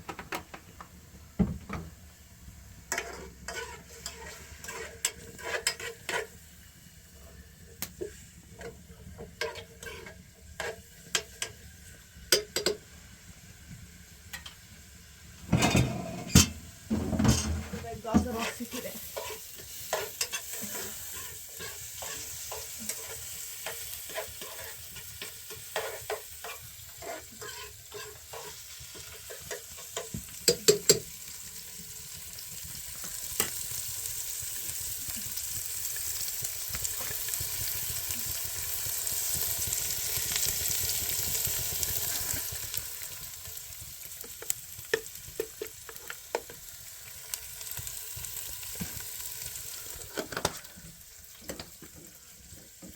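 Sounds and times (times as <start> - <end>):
food sizzling in a pan: 0.0 - 52.9
utensil clicking against pan: 29.3 - 31.1.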